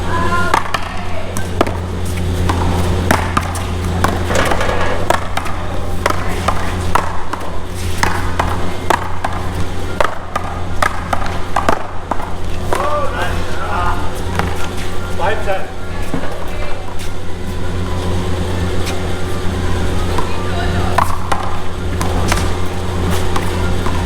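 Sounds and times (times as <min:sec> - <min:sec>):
paddles hitting ball: 0:00.4 - 0:13.0
ball smacking wall: 0:02.5 - 0:06.6.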